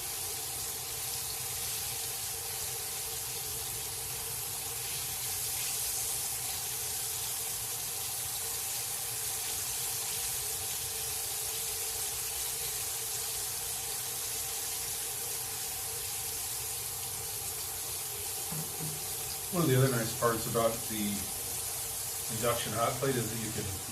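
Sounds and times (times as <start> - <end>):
fish frying in oil: 0.0 - 23.9
faint steady hum: 11.2 - 23.9.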